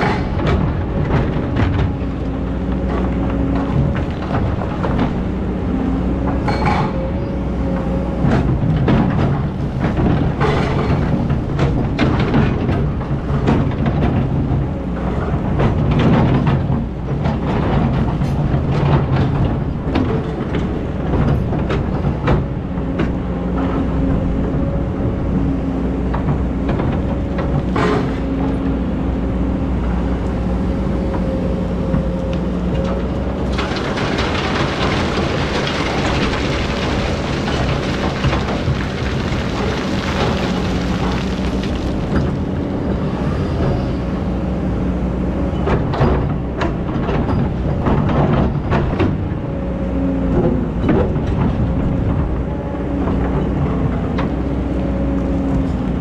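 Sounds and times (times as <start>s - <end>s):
knocks and clatter: 0.0s - 5.4s, 6.2s - 7.1s, 8.2s - 23.9s, 32.8s - 42.6s.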